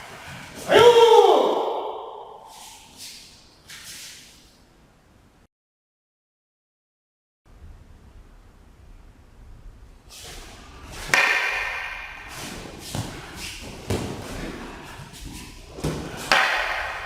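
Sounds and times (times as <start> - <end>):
rustling movement: 10.1 - 17.0.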